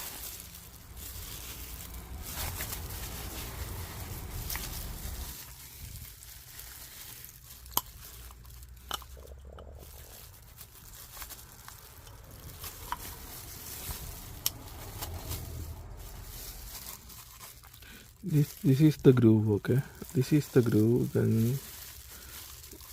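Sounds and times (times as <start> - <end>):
handling small metal parts: 6.8 - 19.0.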